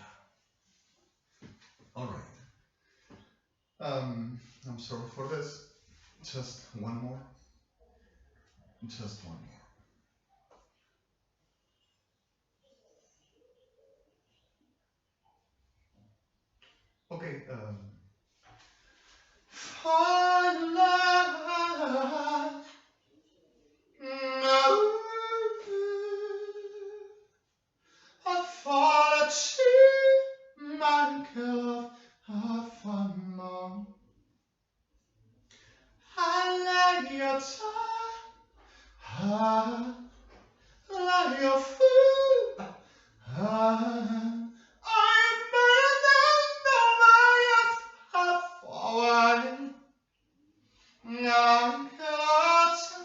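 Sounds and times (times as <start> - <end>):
person singing unaccompanied: 19.5 - 22.7, 24.0 - 27.2, 28.2 - 34.0, 36.1 - 38.4, 39.0 - 40.2, 40.9 - 49.8, 51.0 - 53.0
singer breathing: 27.8 - 28.2, 38.6 - 39.0.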